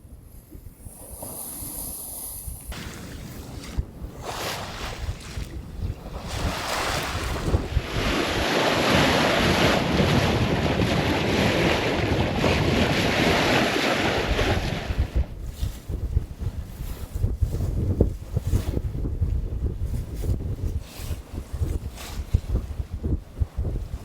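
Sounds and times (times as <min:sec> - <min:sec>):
waves and rushing sea water: 0:01.2 - 0:15.4
wind buffeting microphone: 0:02.2 - 0:24.0.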